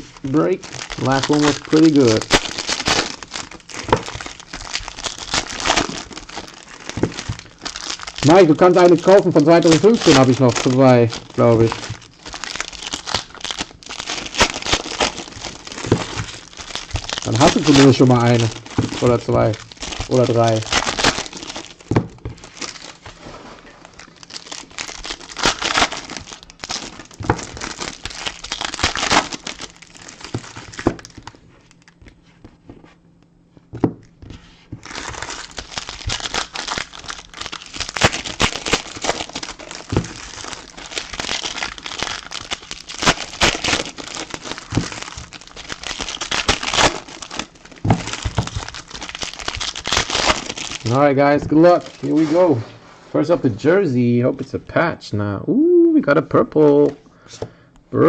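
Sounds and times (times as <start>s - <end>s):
plastic wrapping crinkling and tearing: 0.0s - 32.7s, 34.0s - 52.6s.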